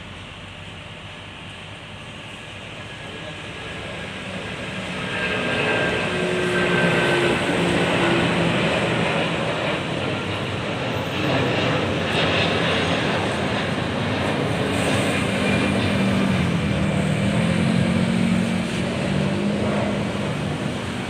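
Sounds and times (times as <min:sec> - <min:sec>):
jet engines roaring: 0:00.0 - 0:21.0.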